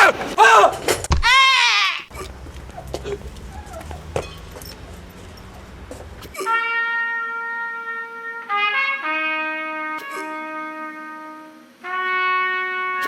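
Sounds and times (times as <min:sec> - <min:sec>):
low room rumble: 0:02.1 - 0:06.4
trumpet playing long notes: 0:06.4 - 0:13.0.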